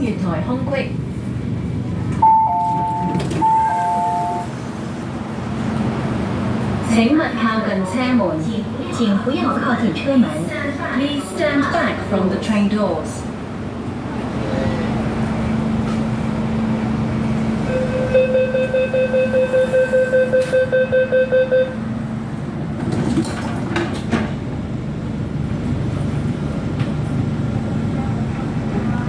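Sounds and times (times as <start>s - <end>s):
stopped train humming: 0.0s - 29.0s
train running noise: 0.0s - 29.0s
train doors shutting: 1.9s - 7.6s, 13.8s - 28.3s.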